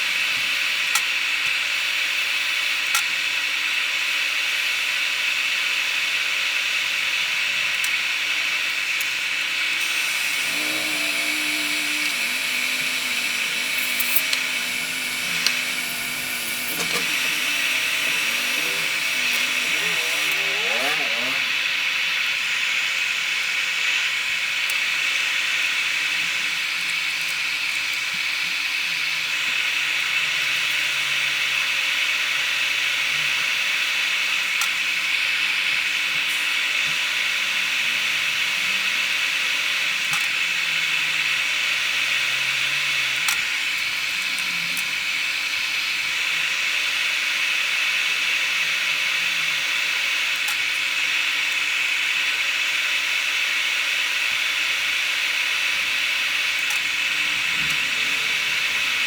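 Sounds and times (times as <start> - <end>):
hot air blower hissing: 8.2 - 22.8, 34.6 - 50.8, 53.9 - 59.0.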